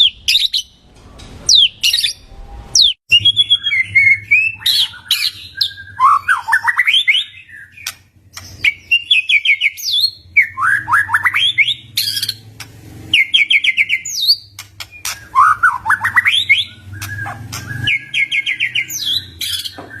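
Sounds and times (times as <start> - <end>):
bird singing whistled phrases: 2.8 - 7.8, 13.1 - 20.0
bird clicking calls: 14.5 - 18.9.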